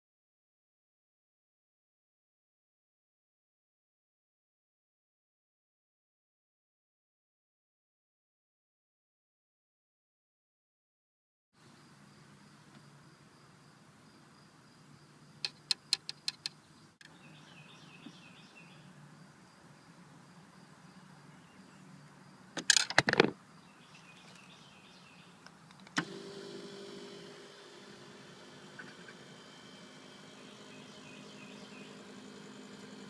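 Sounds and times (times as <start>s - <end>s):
sharp clicks: 15.4s - 17.1s
electric seat motor running: 26.0s - 33.0s.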